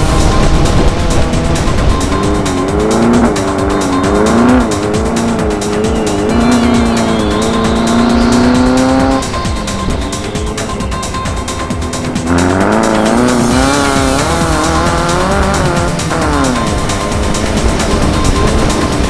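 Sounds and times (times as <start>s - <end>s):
car rattling over rough ground: 0.0s - 19.0s
race car engine revving: 0.0s - 19.0s.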